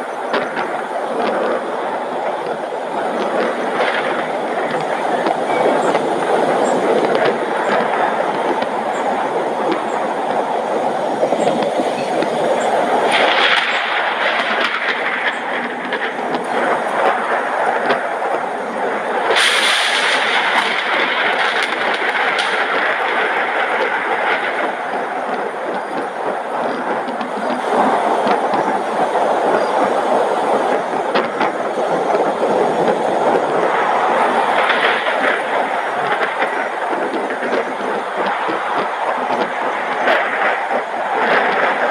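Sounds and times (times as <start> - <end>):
rain: 0.0 - 41.9
wind: 0.0 - 41.9.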